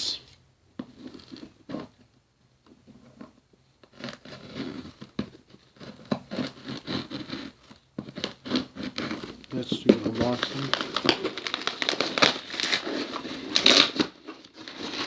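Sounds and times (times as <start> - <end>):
wrapping crinkling and rustling: 3.8 - 15.0.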